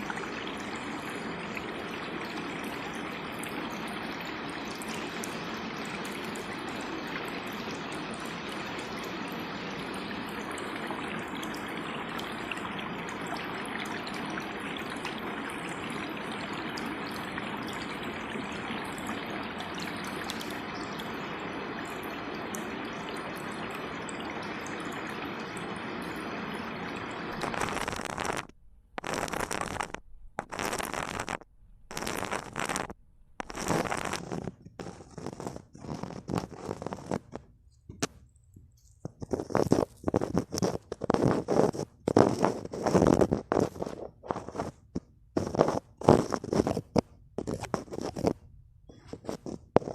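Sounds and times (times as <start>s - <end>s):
water rushing: 0.0s - 34.4s.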